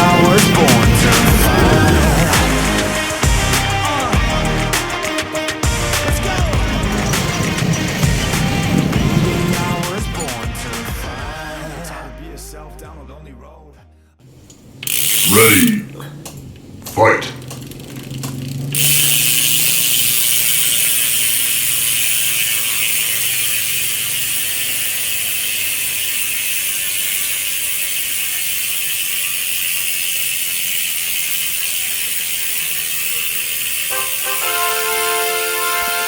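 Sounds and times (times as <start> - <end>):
bicycle freewheel ticking: 0.0 - 11.2, 14.3 - 36.0.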